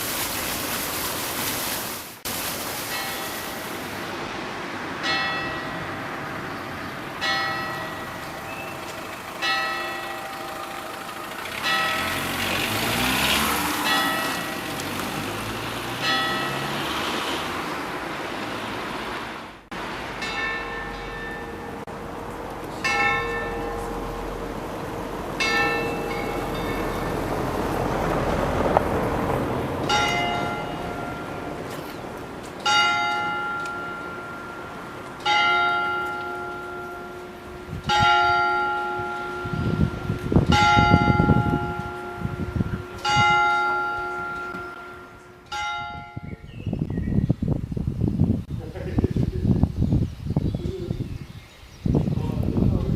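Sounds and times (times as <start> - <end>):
clock bell striking: 2.9 - 3.7, 5.0 - 6.2, 7.2 - 12.6, 13.8 - 15.2, 16.0 - 16.8, 20.2 - 27.8, 29.8 - 31.7, 32.6 - 46.3
church bell ringing: 2.9 - 4.0, 5.0 - 13.2, 13.8 - 17.0, 20.1 - 28.7, 29.8 - 32.0, 32.6 - 46.5.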